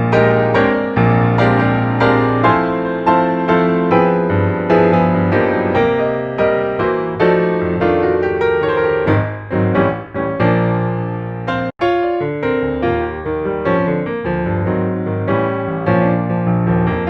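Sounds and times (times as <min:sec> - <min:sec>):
gentle piano music: 0:00.0 - 0:17.0.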